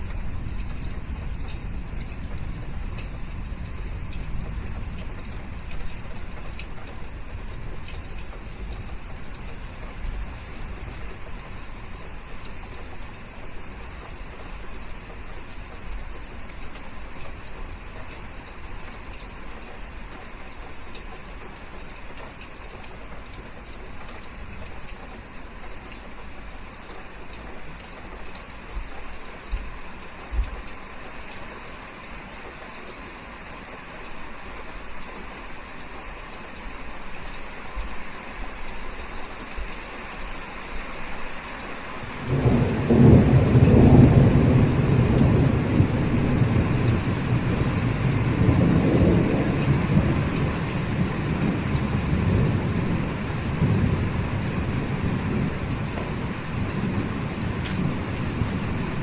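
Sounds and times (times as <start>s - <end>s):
steady rain falling: 0.0s - 59.0s
thunder rumbling: 42.2s - 59.0s.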